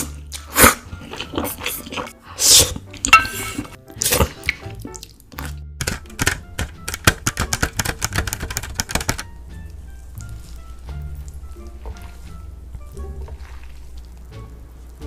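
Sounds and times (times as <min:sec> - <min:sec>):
slurping noodles: 0:00.0 - 0:05.6, 0:13.2 - 0:15.0
wet chewing: 0:00.0 - 0:05.7, 0:09.2 - 0:15.0
quiet background music: 0:00.0 - 0:15.0.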